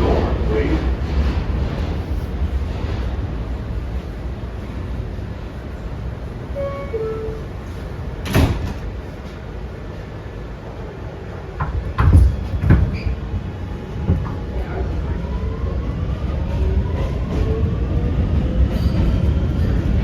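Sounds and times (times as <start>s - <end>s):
train rising whines: 0.0s - 11.5s
subway doors closing knock: 0.0s - 14.7s
train rumble: 0.0s - 20.0s.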